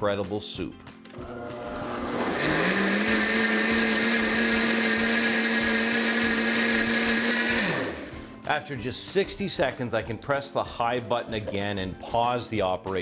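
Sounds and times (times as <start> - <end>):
blender motor whine: 1.2 - 8.3.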